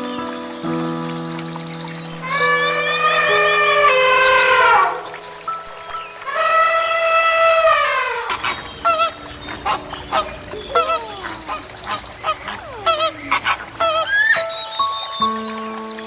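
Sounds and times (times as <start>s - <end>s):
long falling animal call: 2.2s - 5.1s, 6.2s - 14.7s
short wavering honk-like calls: 6.3s - 14.4s.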